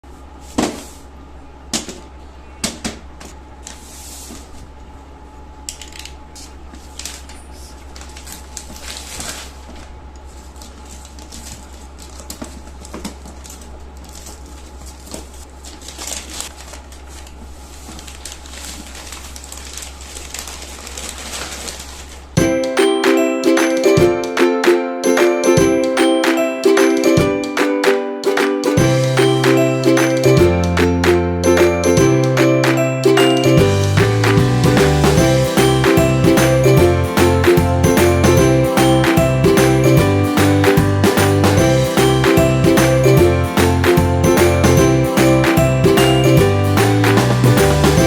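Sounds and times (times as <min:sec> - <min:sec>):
low electrical hum: 0:00.0 - 0:23.0.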